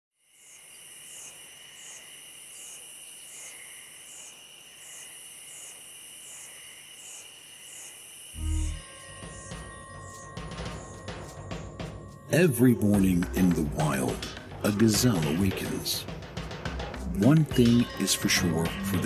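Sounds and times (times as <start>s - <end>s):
pulsing high insect chirring: 0.2s - 12.3s
crickets and insects trilling: 0.2s - 12.4s.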